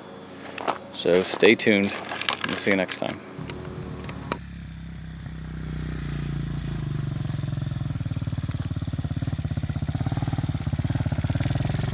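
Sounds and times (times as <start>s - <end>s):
motorcycle engine running: 3.4s - 11.9s.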